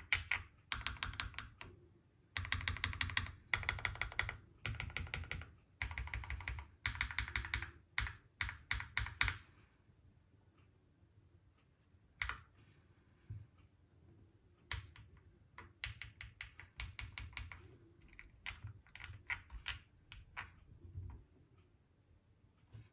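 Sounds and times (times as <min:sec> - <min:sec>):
mechanical keyboard typing: 0:00.0 - 0:01.7, 0:02.4 - 0:09.4, 0:12.2 - 0:12.6, 0:14.7 - 0:20.6.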